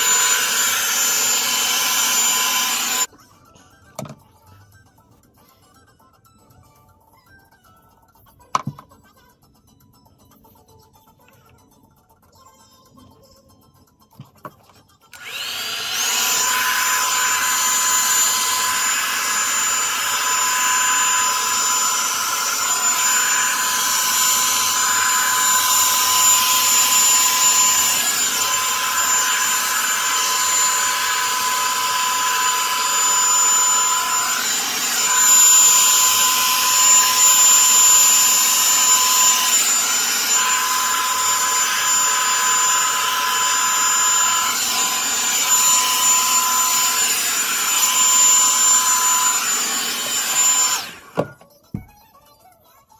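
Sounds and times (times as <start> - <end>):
hot-air brush motor whine: 0.0 - 3.1, 15.1 - 51.4.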